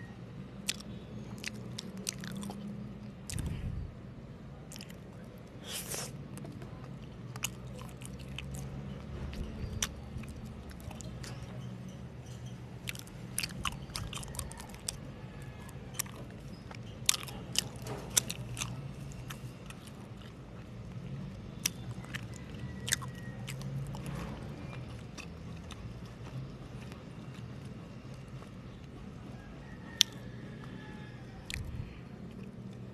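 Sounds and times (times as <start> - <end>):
wet mouth chewing clicks: 0.6 - 2.7, 3.3 - 3.7, 5.9 - 11.6, 12.8 - 15.0, 21.6 - 24.2, 31.4 - 32.8.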